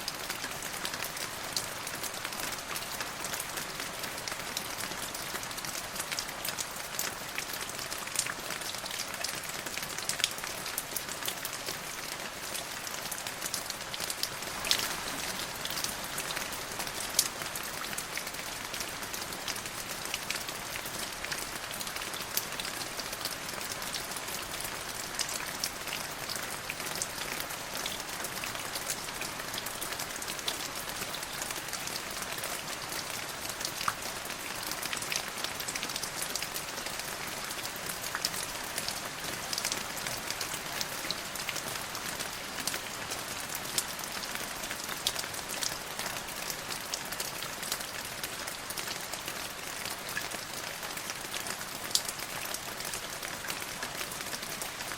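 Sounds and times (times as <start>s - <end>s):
steady rain hiss: 0.0s - 54.9s.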